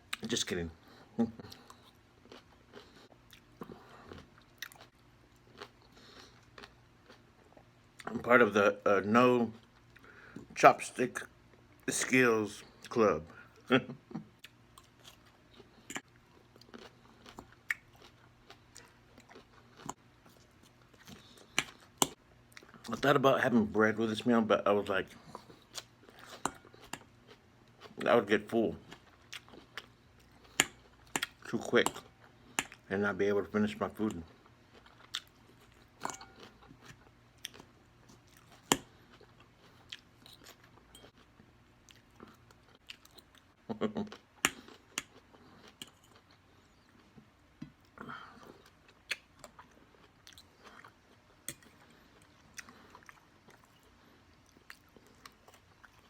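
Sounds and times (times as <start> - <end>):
chewing and mouth clicks: 1.4 - 8.2, 14.1 - 22.9, 34.1 - 43.5, 47.8 - 56.0.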